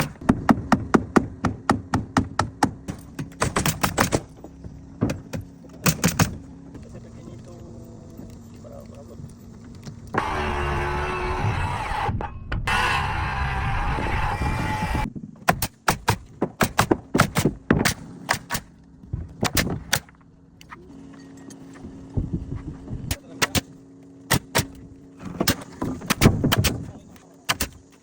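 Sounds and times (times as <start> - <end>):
nails hammered into wood: 0.0 - 4.4, 5.0 - 6.4, 15.4 - 18.7, 19.4 - 20.2, 23.1 - 23.7, 24.3 - 24.8, 25.4 - 26.9, 27.5 - 27.8.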